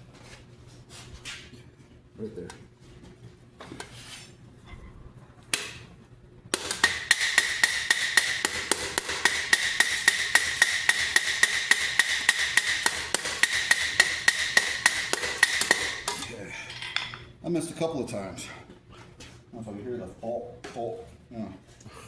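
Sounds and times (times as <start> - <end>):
hammer striking metal helmet: 6.6 - 16.2.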